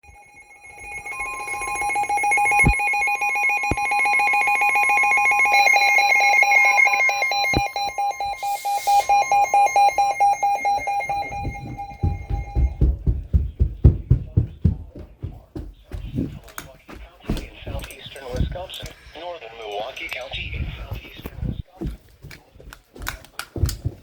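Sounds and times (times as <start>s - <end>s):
electronic alarm tones beeping: 0.0s - 13.0s
weather radio warning tone: 4.9s - 12.8s, 17.4s - 21.7s.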